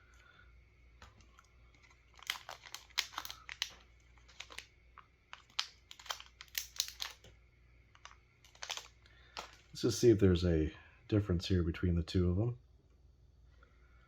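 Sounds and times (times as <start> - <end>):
plastic packaging crinkling: 1.0 - 7.3, 7.9 - 9.8.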